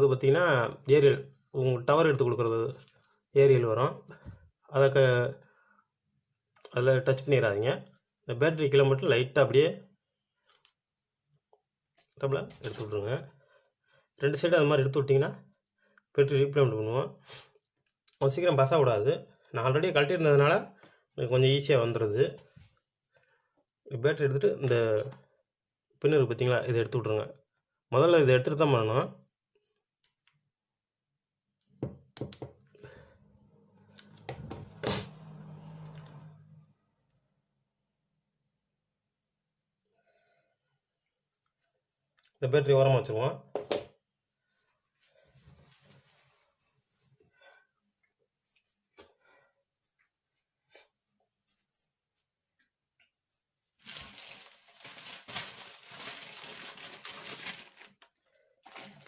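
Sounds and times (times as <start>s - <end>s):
plastic packaging crinkling: 53.8s - 59.0s.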